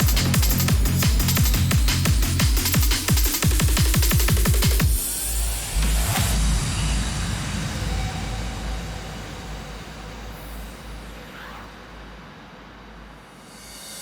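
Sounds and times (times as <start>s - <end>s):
electronic dance music: 0.0s - 6.1s
rushing noise wash with rumble: 5.0s - 13.4s.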